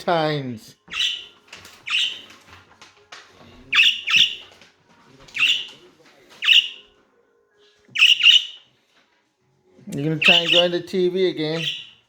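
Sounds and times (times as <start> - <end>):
budgerigar chatter: 0.9 - 1.3, 1.9 - 2.3, 3.7 - 4.4, 5.4 - 5.8, 6.4 - 6.8, 8.0 - 8.6, 10.2 - 10.7, 11.6 - 12.0
budgerigar sharp calls: 0.9 - 1.3, 1.9 - 2.2, 3.7 - 4.4, 5.4 - 5.7, 6.4 - 6.8, 8.0 - 8.6, 10.2 - 10.7, 11.6 - 12.0.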